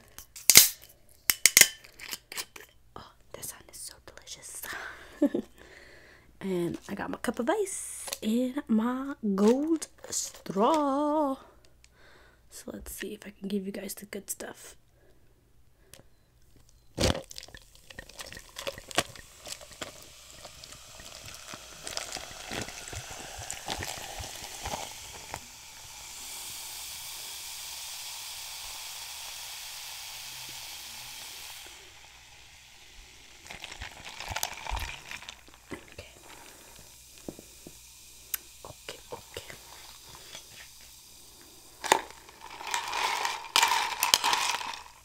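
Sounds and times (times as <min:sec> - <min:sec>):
drink fizzing: 0:17.0 - 0:45.0
juice poured over ice: 0:17.0 - 0:45.0.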